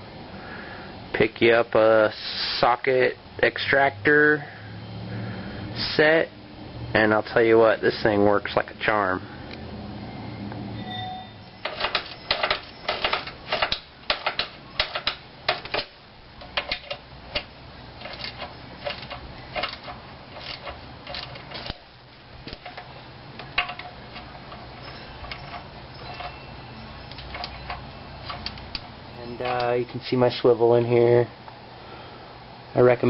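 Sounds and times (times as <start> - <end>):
socket ratchet clicking: 27.1 - 28.9.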